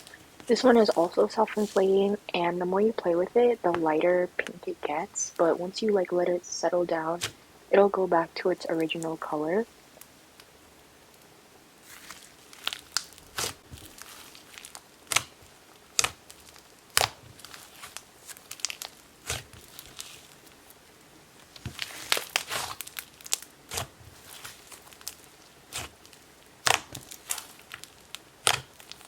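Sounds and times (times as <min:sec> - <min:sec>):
slime squished and crackling: 0:11.8 - 0:29.0.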